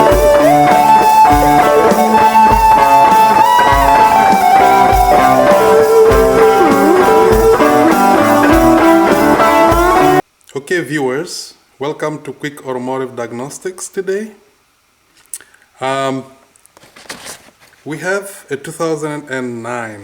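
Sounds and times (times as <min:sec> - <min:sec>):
blues-rock electric guitar music: 0:00.0 - 0:10.2.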